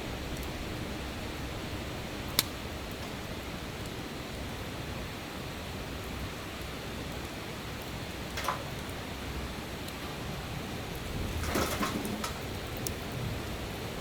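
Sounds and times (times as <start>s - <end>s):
campfire hiss: 0.0s - 14.0s
campfire pop: 2.3s - 3.2s, 8.3s - 9.1s.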